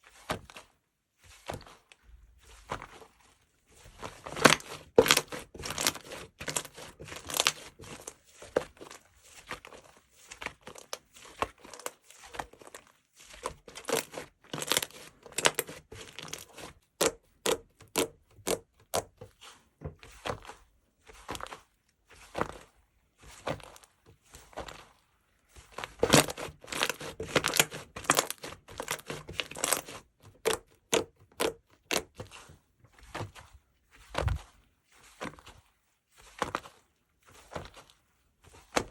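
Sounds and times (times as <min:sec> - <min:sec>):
slime squishing with sticky pops: 0:03.9 - 0:20.6, 0:25.6 - 0:33.4.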